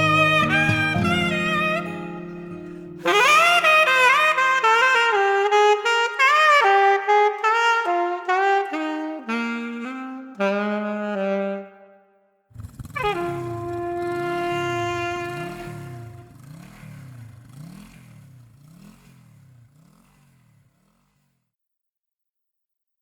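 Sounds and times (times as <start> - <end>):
held backing chords: 0.0 - 4.6, 13.0 - 16.3
saxophone melody with vibrato: 0.0 - 17.2.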